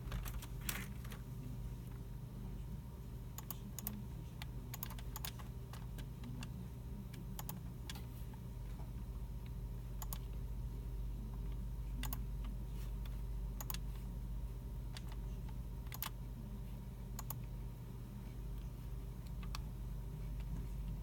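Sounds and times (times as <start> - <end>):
steady low hum: 0.0 - 21.0
keyboard keystrokes: 4.7 - 6.5, 15.9 - 16.2.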